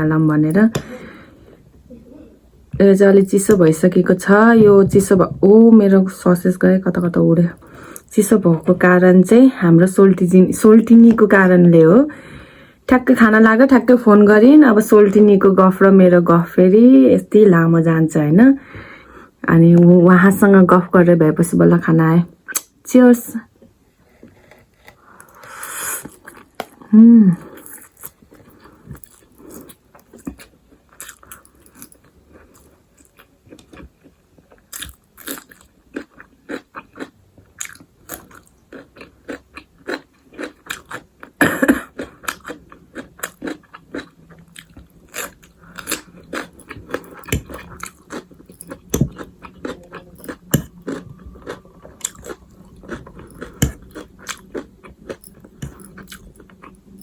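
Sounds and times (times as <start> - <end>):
chewing and crunching food: 24.3 - 57.0
person humming: 26.8 - 27.5.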